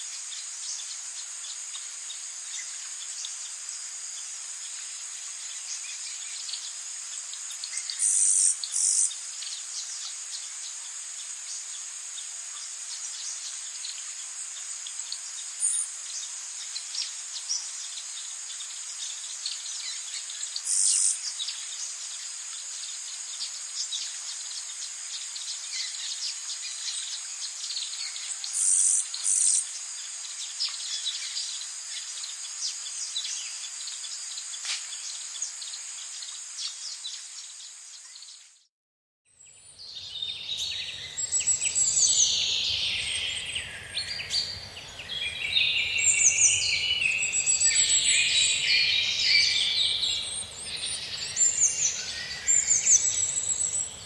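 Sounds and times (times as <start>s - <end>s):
high-pitched insect chorus: 39.6s - 54.0s
short bird calls: 39.8s - 54.0s.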